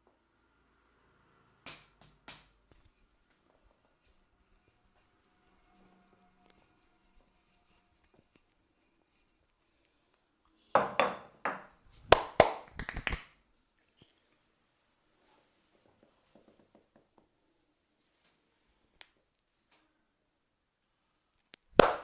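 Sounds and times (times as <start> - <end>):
hands slapping during massage: 1.6 - 2.9, 12.0 - 13.4, 21.7 - 22.0.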